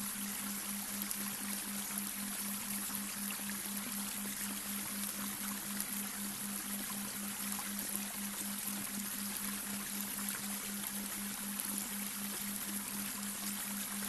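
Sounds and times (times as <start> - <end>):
brook water trickling: 0.0 - 14.0.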